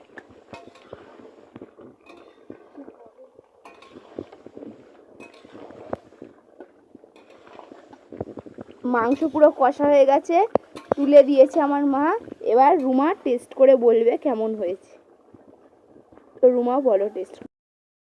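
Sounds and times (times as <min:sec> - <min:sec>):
metal utensils clinking on pot: 0:00.5 - 0:01.0, 0:02.0 - 0:02.4, 0:03.6 - 0:04.1, 0:05.2 - 0:05.8, 0:07.2 - 0:07.6, 0:09.0 - 0:09.8, 0:10.7 - 0:11.3.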